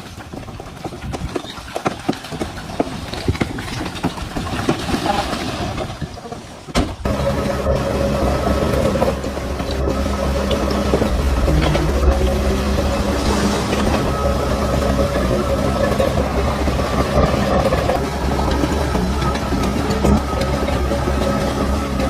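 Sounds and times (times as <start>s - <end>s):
diesel engine rumbling: 2.3s - 22.0s
bulldozer clattering knocks: 8.7s - 20.9s.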